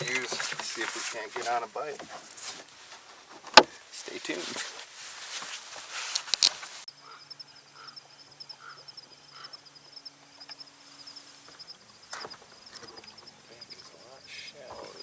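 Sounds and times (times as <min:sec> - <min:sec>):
soft repeating calls: 0:06.9 - 0:15.0.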